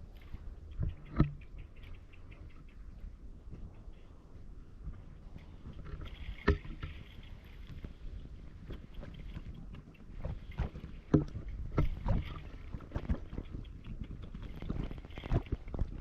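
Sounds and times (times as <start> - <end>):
shallow water splashing: 5.0 - 16.0.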